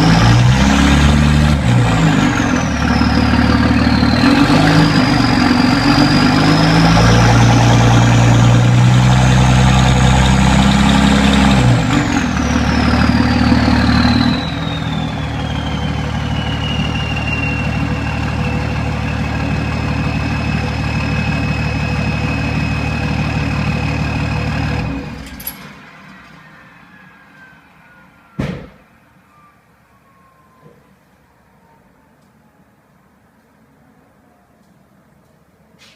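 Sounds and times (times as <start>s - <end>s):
diesel engine revving: 0.0s - 25.8s
turbo whistling: 2.0s - 24.8s.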